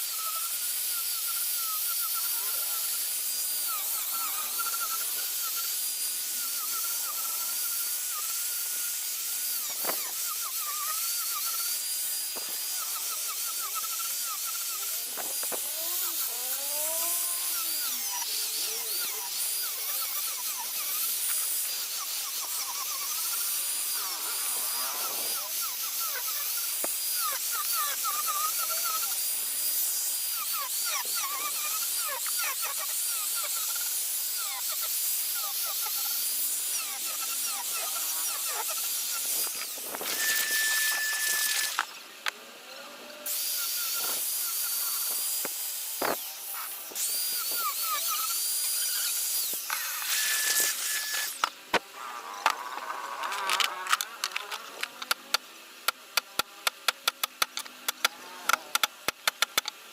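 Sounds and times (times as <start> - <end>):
electric grinder whining on wood: 0.0 - 59.9
sharp clicks: 53.2 - 59.8.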